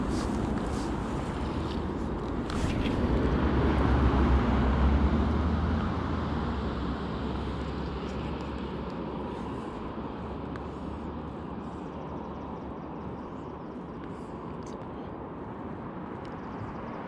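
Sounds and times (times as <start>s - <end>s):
distant engine rumble: 0.0s - 16.8s.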